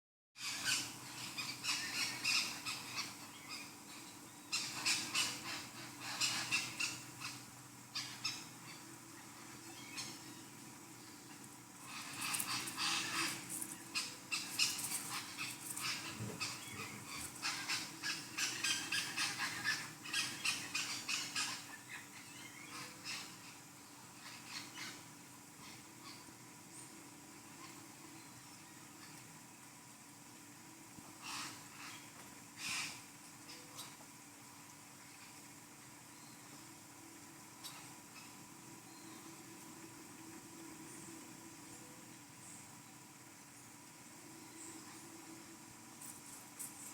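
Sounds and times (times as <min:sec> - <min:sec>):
faint steady hum: 0:00.4 - 0:46.9
birds chirping and calling: 0:11.8 - 0:25.0.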